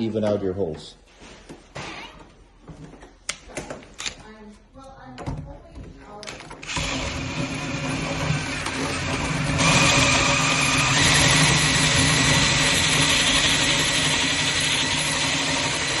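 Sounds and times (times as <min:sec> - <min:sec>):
drill hole saw cutting wood: 0:06.6 - 0:16.0.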